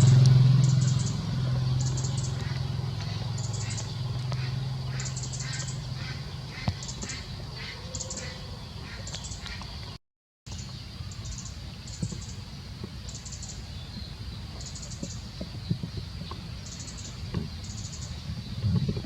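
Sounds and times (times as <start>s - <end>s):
low rumble: 0.0s - 7.6s
high chirping bursts: 0.0s - 8.4s.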